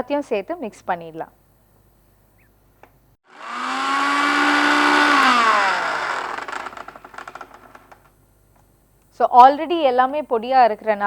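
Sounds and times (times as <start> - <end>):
mixer grinder motor: 3.3 - 8.1.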